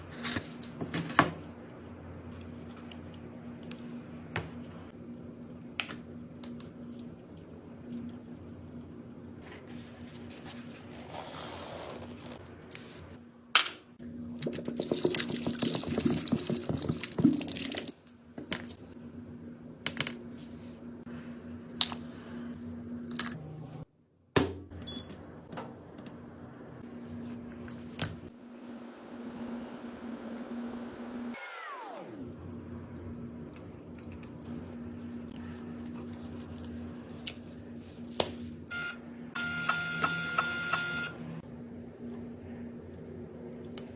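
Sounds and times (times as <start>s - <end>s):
steady low hum: 24.8s - 31.4s.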